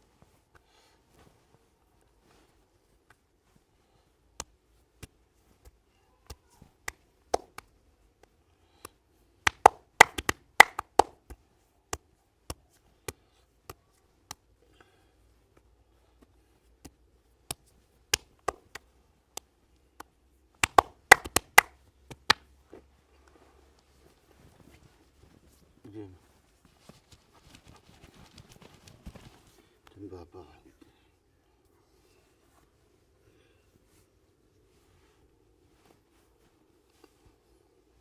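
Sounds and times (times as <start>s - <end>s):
hands tapping on head: 4.4s - 7.7s, 8.8s - 14.4s, 19.4s - 22.5s.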